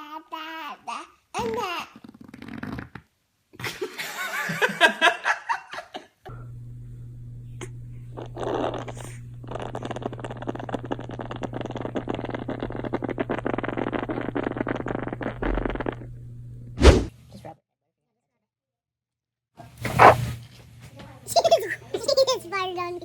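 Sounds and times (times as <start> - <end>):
crackling sputtering baby fart: 1.6 - 3.1, 7.6 - 16.2, 19.8 - 20.4
steady low hum: 6.3 - 16.8.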